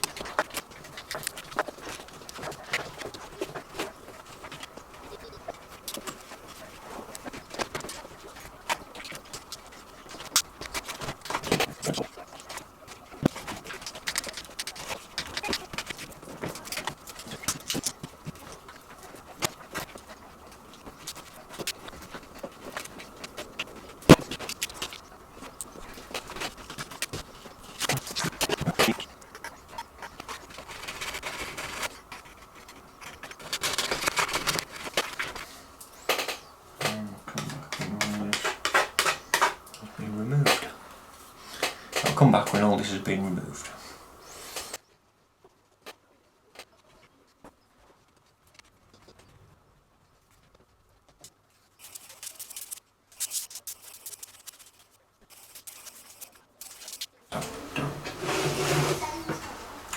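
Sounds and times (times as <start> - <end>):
pry tool scraping: 5.8 - 39.7, 51.8 - 59.4.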